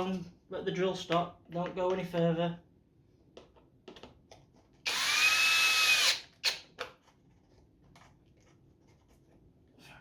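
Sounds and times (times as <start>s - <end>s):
power drill driving a screw: 4.8s - 6.6s.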